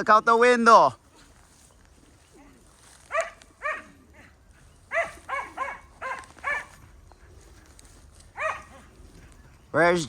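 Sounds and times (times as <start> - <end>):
dog barking: 3.1 - 4.3, 4.9 - 6.8, 8.4 - 8.9.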